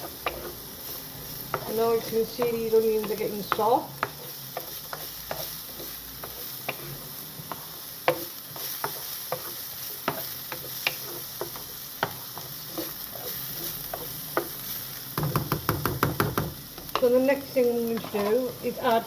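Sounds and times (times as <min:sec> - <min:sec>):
onions sizzling in a pan: 0:00.0 - 0:19.0
utensil scraping a pan: 0:08.1 - 0:14.5, 0:17.8 - 0:19.0.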